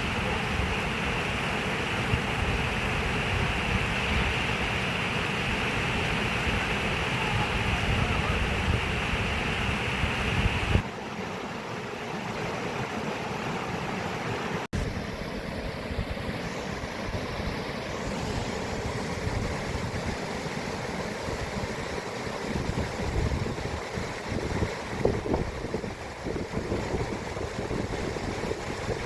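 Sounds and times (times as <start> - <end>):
rushing water: 0.0 - 29.0
wind buffeting microphone: 7.4 - 10.8, 21.2 - 29.0.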